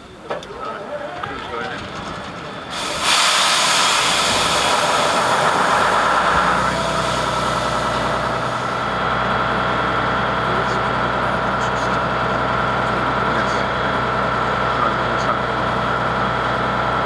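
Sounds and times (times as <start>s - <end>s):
jet engines starting up: 0.4s - 17.0s
low hum: 2.7s - 9.1s
loud rush of air: 2.7s - 9.2s.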